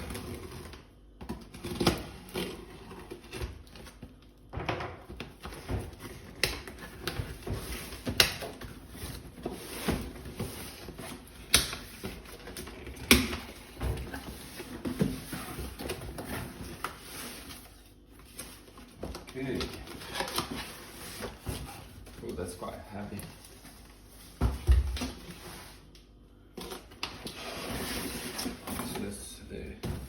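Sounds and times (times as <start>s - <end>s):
cardboard scraping and rustling: 5.3s - 25.9s, 26.6s - 30.0s.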